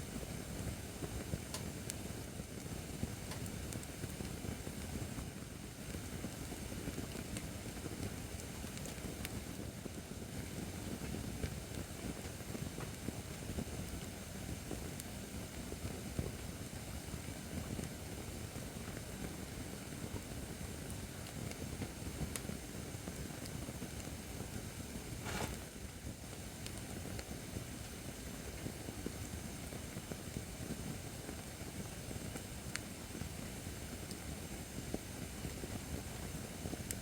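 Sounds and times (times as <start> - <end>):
fire burning: 0.0 - 37.0
wood crackling and popping: 25.0 - 25.8.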